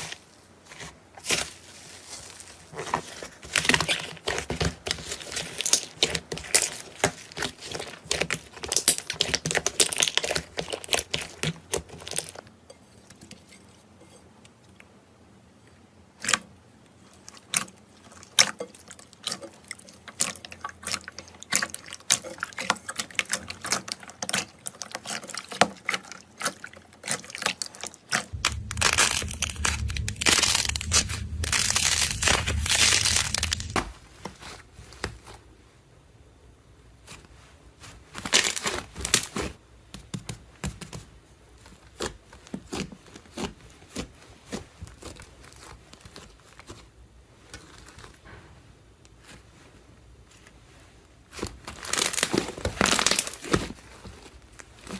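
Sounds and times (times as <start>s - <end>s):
slime crackling and popping: 3.6s - 12.2s, 27.0s - 34.0s, 51.4s - 53.8s
low rumble: 28.3s - 34.2s.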